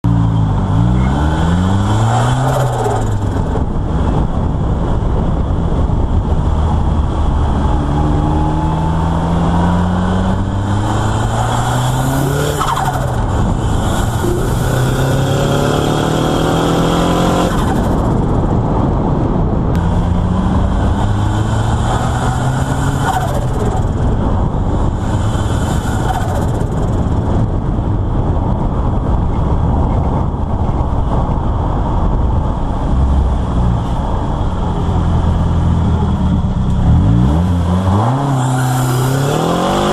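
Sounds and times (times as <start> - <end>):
turbocharged engine revving: 0.0 - 4.3, 6.2 - 18.3, 19.8 - 27.0, 34.4 - 39.9.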